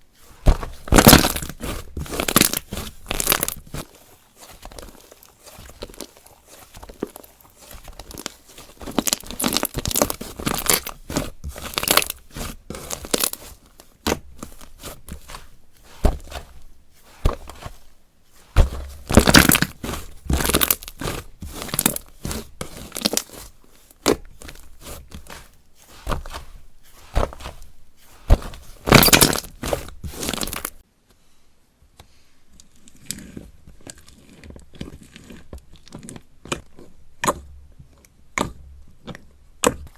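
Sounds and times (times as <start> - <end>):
slime squelching and popping: 0.4 - 17.8, 18.4 - 30.8.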